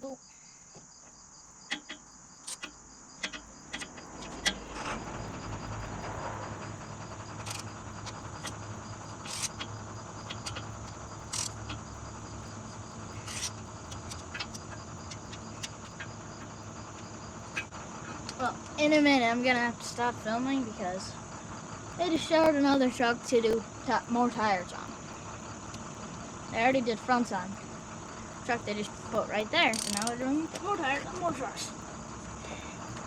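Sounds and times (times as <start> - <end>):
crickets chirring: 0.0 - 33.0
vehicle engine hum: 1.0 - 33.0
ratchet wrench clicks: 1.7 - 5.0, 7.4 - 8.6, 9.2 - 11.8, 13.2 - 16.0, 29.7 - 30.2.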